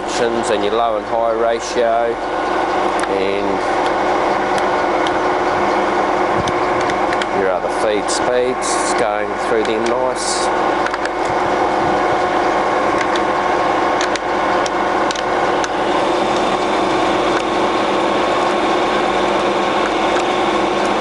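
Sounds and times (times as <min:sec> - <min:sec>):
lathe gears humming: 0:00.0 - 0:21.0
gearbox clicks: 0:14.0 - 0:15.8.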